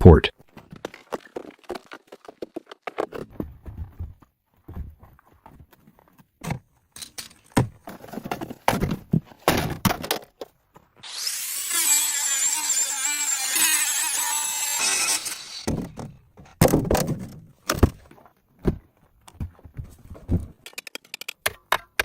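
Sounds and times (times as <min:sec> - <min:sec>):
power tool running: 0:11.0 - 0:15.7
knocks and clunks on steel frame: 0:15.7 - 0:20.6.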